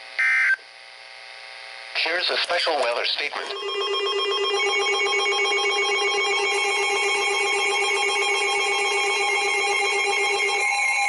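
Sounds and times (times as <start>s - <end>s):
electronic emergency alert tones: 3.5s - 11.0s.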